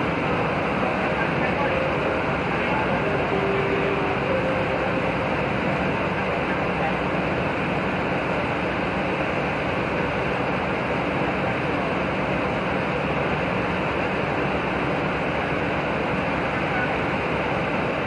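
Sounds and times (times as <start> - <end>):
murmur of voices: 0.0 - 7.6
bus engines idling: 0.0 - 18.0.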